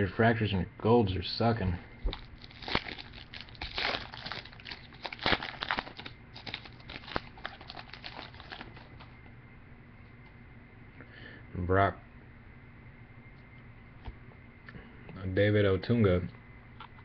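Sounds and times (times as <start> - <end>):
foil wrapper tearing and crinkling: 2.1 - 9.1.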